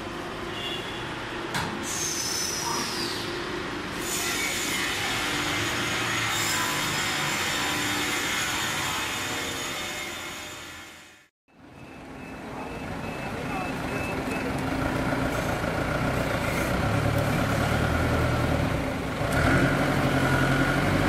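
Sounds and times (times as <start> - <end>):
high squeal sliding down: 1.8 - 3.4.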